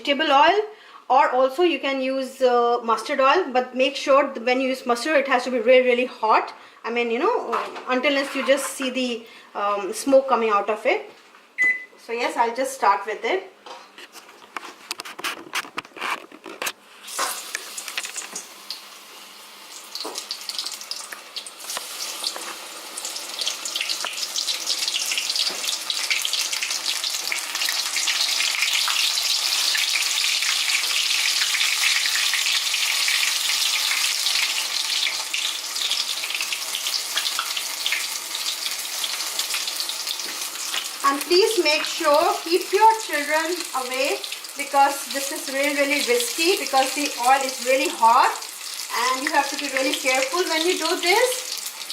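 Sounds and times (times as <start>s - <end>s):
vegetables frying in hot oil: 16.9s - 51.9s.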